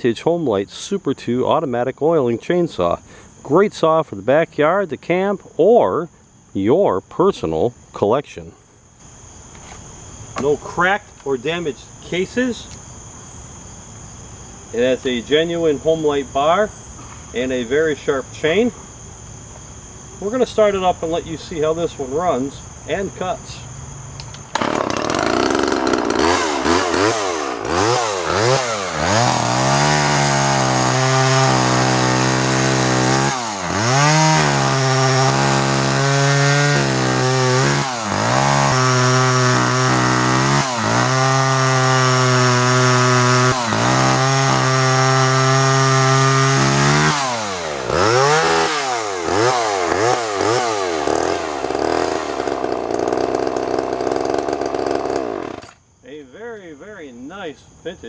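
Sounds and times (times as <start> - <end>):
chainsaw engine revving: 24.4 - 55.8.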